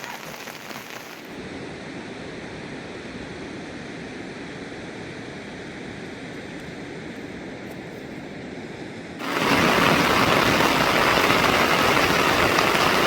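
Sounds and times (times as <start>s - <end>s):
rain pattering: 0.0s - 1.4s, 9.2s - 13.0s
running water rushing: 0.0s - 1.4s, 9.2s - 13.0s.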